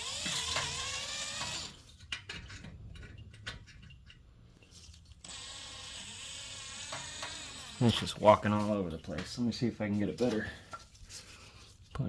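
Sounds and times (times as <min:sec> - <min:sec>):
electric drill running: 0:00.0 - 0:01.8, 0:05.2 - 0:08.3.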